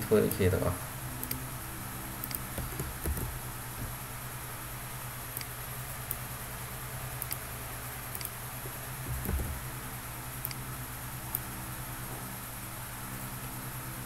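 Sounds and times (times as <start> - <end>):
electrical hum: 0.0 - 14.0
computer mouse clicks: 1.2 - 1.4, 2.2 - 3.4, 7.2 - 7.4, 8.1 - 8.4
soft low thump: 9.0 - 9.7.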